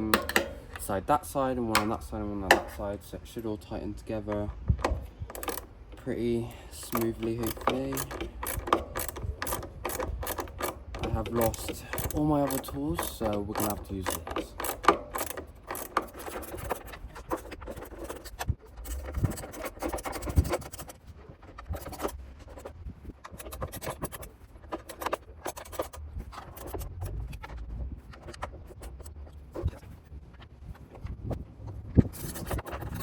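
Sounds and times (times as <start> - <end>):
tool clicking and scraping: 0.0 - 31.4, 32.0 - 33.0
screws driven into plastic: 4.8 - 5.7, 6.8 - 20.9.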